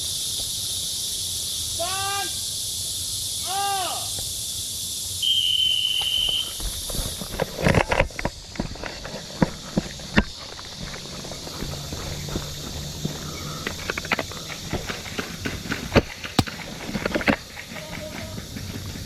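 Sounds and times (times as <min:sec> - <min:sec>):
footsteps through undergrowth: 0:08.3 - 0:19.0.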